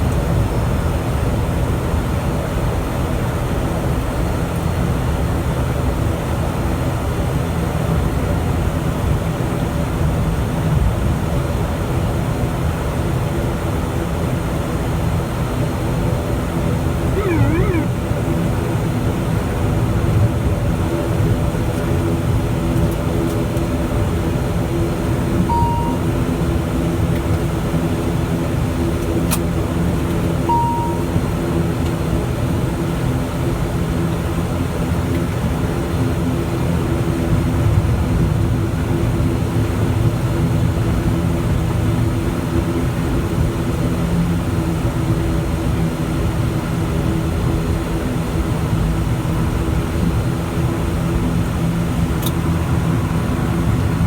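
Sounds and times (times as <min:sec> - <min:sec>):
short beeps: 0:17.2 - 0:17.9, 0:25.5 - 0:26.1, 0:30.5 - 0:31.1
turboprop engines droning: 0:17.2 - 0:18.1.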